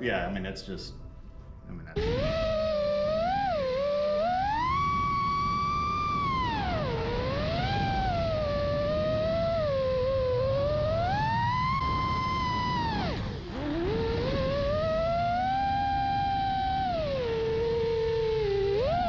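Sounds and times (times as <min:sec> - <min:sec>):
rushing air noise: 0:01.9 - 0:15.6
drone motors whining: 0:02.0 - 0:19.0.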